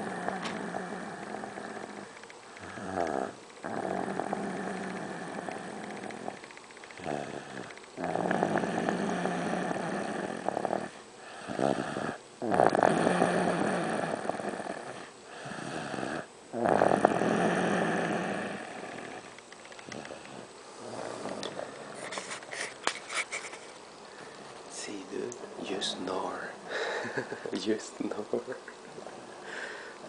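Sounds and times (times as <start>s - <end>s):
boy snoring: 0.0s - 6.4s, 7.0s - 19.3s, 20.0s - 22.2s.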